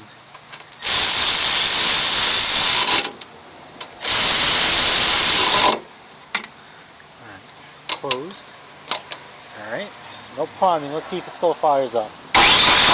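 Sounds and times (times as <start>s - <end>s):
pressurized spray hissing: 0.8s - 3.0s, 4.0s - 5.8s, 12.4s - 12.9s.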